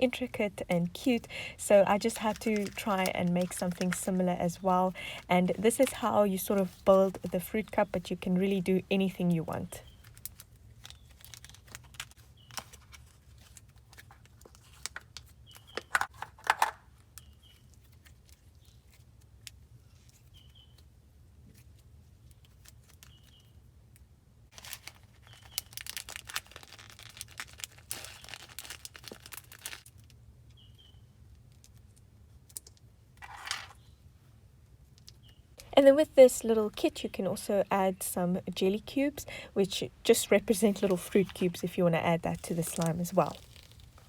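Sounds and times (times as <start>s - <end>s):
slime squeezed with sticky crackles: 24.5s - 30.0s, 42.6s - 44.0s.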